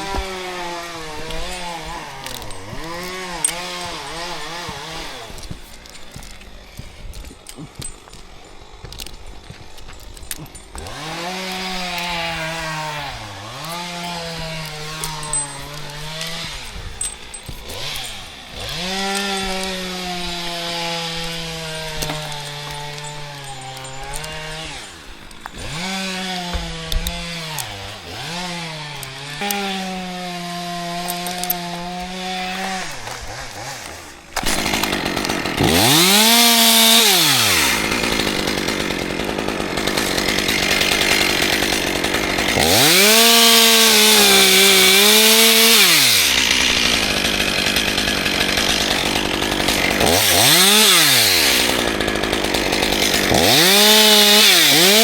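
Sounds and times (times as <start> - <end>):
chainsaw cutting wood: 0.0 - 55.0.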